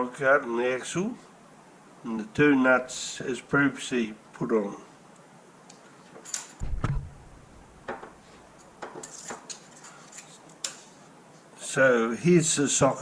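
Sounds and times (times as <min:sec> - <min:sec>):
dull thump: 0:06.6 - 0:08.2.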